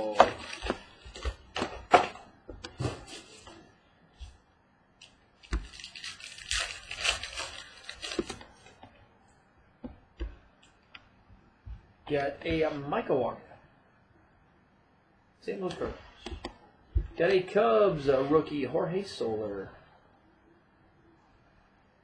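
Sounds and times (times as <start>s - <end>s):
crinkly wrapper tearing: 5.0s - 8.6s.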